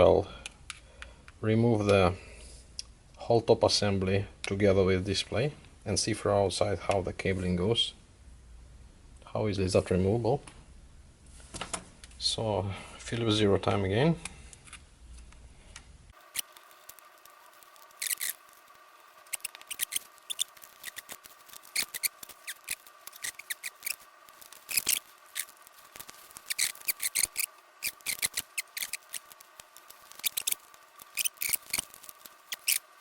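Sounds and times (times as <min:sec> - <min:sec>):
tools scraping plastic: 0:16.2 - 0:33.0.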